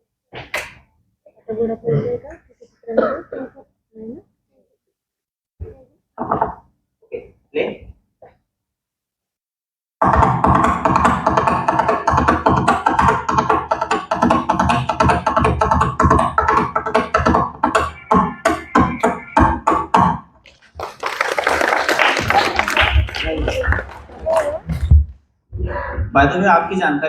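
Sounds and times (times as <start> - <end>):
crowd noise: 20.5 - 25.1.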